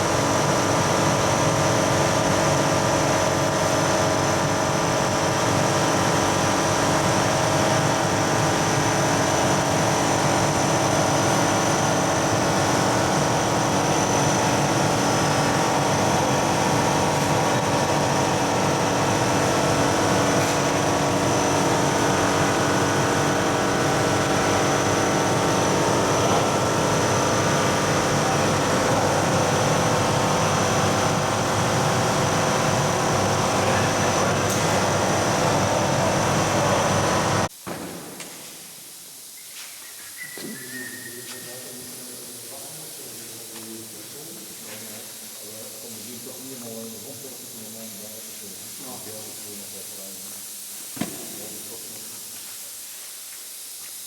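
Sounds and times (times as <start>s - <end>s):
mechanical drone: 0.2s - 37.5s
high thin whine: 38.2s - 54.0s.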